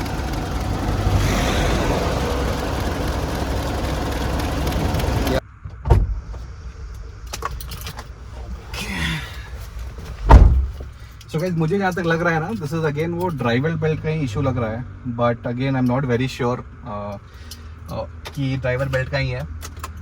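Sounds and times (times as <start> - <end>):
diesel engine idling: 0.0 - 5.4
single thump: 10.3 - 10.8.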